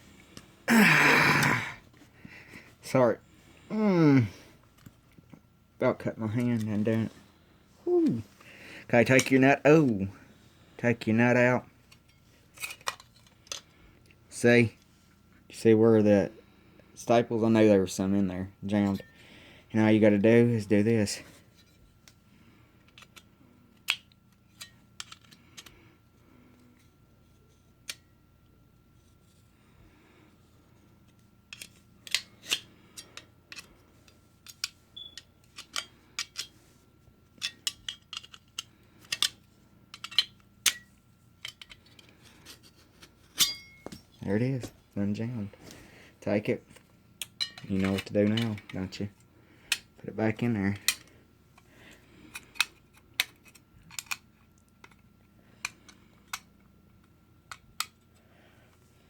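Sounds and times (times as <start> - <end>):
staple gun parts clicking: 37.4 - 42.1.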